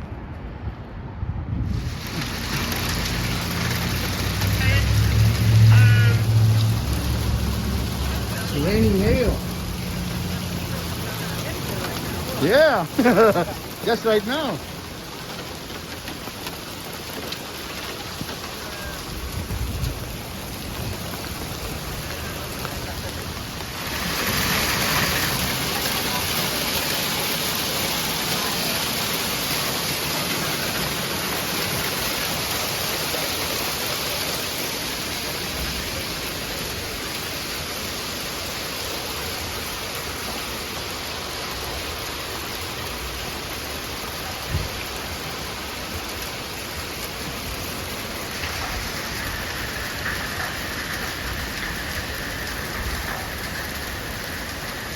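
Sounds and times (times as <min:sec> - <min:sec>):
heavy rain pouring: 0:01.5 - 0:54.9.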